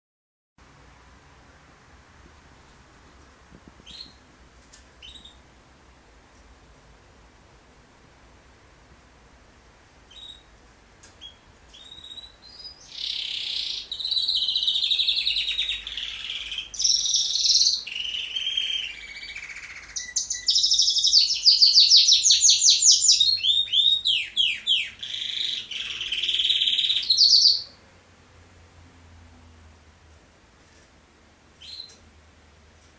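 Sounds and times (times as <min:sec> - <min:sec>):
songbird singing: 0:03.8 - 0:04.3, 0:05.0 - 0:05.5, 0:10.1 - 0:27.8, 0:31.6 - 0:32.1.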